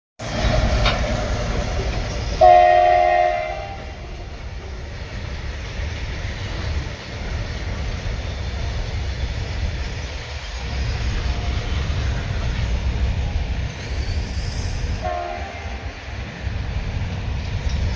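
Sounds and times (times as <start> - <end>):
locomotive horn blast: 0.2 - 4.3, 15.0 - 16.0
train rumble: 0.2 - 17.9.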